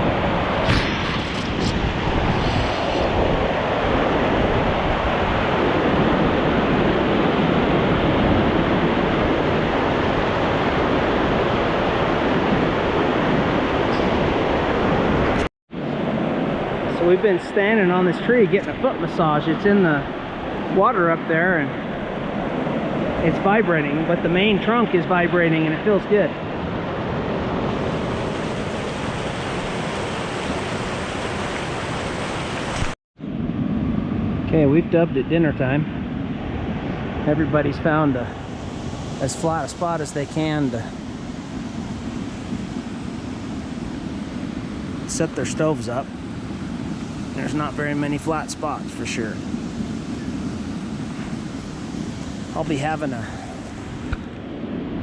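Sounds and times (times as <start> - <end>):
waterfall roaring: 47.4 - 49.5, 50.1 - 54.3.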